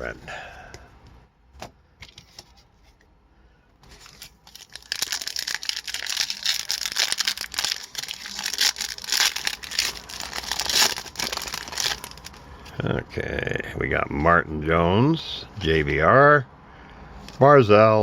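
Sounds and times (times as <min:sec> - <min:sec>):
wrapper crackling: 0:04.0 - 0:12.4.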